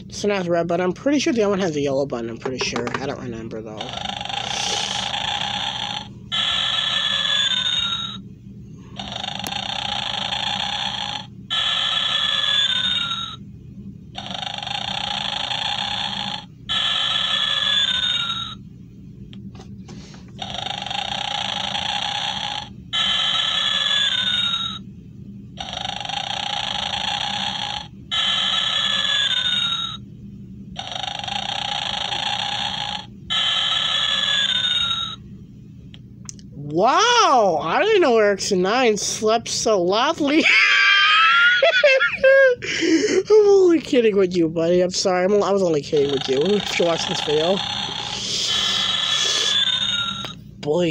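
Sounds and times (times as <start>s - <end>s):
toy snoring: 3.8s - 8.2s, 9.0s - 13.4s, 14.2s - 18.6s, 20.4s - 24.8s, 25.6s - 30.0s, 30.8s - 35.2s, 46.0s - 50.4s.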